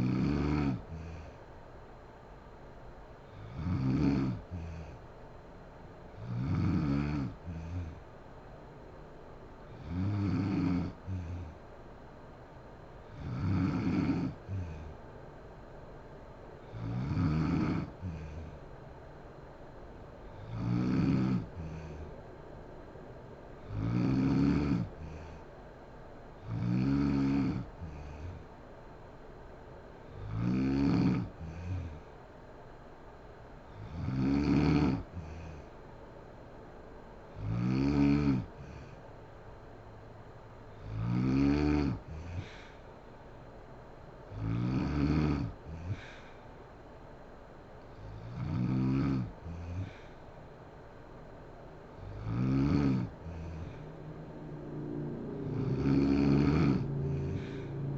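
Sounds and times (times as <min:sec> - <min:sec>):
woman snoring loudly: 0:00.0 - 0:00.9, 0:03.3 - 0:04.6, 0:06.2 - 0:08.0, 0:09.8 - 0:11.5, 0:13.1 - 0:14.9, 0:16.7 - 0:18.5, 0:20.4 - 0:22.0, 0:23.6 - 0:25.1, 0:26.4 - 0:28.4, 0:30.1 - 0:32.0, 0:33.8 - 0:35.4, 0:37.4 - 0:38.5, 0:40.9 - 0:42.6, 0:44.4 - 0:46.0, 0:48.0 - 0:50.0, 0:51.9 - 0:57.9
soft breath: 0:00.8 - 0:01.7, 0:21.4 - 0:23.7, 0:24.8 - 0:25.9, 0:38.5 - 0:39.2, 0:42.0 - 0:43.5, 0:45.6 - 0:47.0, 0:49.3 - 0:52.3, 0:53.0 - 0:57.9.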